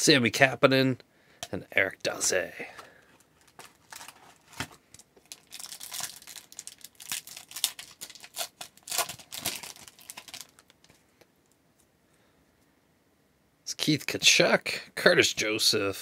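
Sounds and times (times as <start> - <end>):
foil wrapper crinkling and tearing: 3.4 - 10.9.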